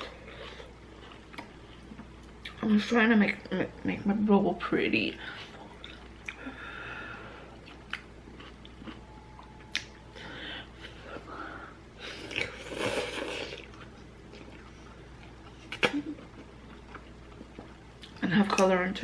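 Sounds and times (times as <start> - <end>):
soft chewing: 0.0 - 2.6, 5.1 - 6.6, 7.4 - 11.4, 12.0 - 18.7.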